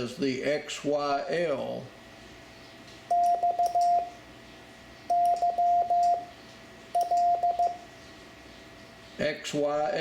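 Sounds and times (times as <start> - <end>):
morse code beeping tone: 3.1 - 4.1, 5.1 - 6.3, 7.0 - 7.8.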